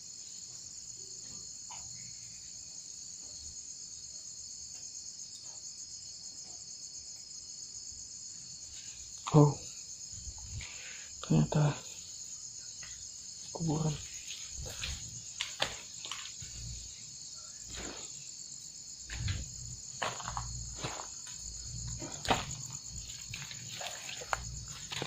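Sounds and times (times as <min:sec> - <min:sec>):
crickets chirring: 0:00.0 - 0:25.0
soft footsteps: 0:12.8 - 0:18.2, 0:19.0 - 0:25.0.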